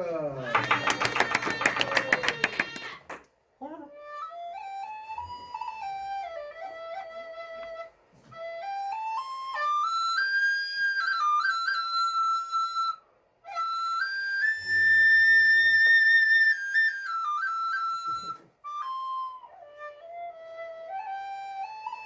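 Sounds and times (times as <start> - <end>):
recorder melody: 4.0 - 22.0.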